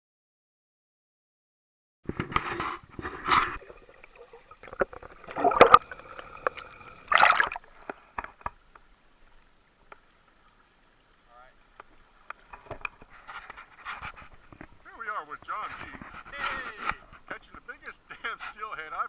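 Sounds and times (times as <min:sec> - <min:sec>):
water splashing: 0:03.0 - 0:08.3
water dripping: 0:03.5 - 0:13.0.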